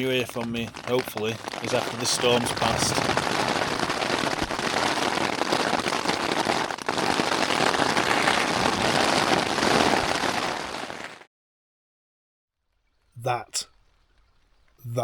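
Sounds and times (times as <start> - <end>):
heavy rain on a tent: 0.0 - 11.3.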